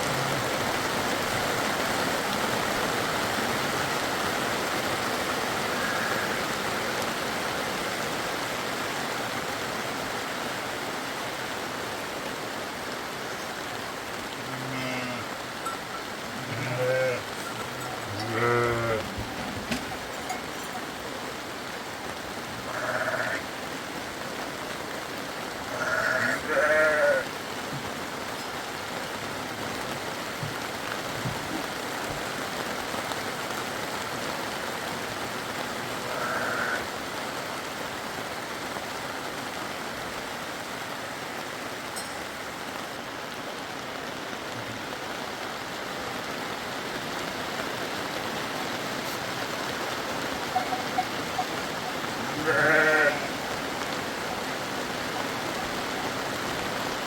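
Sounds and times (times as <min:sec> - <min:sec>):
steady rain falling: 0:00.0 - 0:57.0
sheep bleating: 0:05.7 - 0:07.0, 0:14.4 - 0:15.4, 0:16.3 - 0:19.5, 0:22.7 - 0:23.4, 0:25.7 - 0:27.3, 0:36.1 - 0:36.8, 0:50.5 - 0:51.6, 0:52.2 - 0:53.4.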